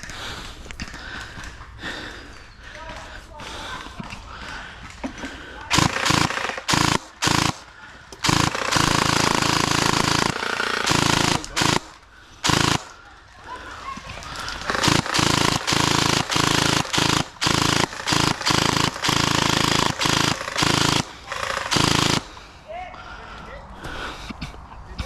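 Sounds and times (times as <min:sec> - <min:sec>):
gel blasters firing full auto: 0:05.7 - 0:07.6, 0:08.2 - 0:12.9, 0:14.7 - 0:22.3.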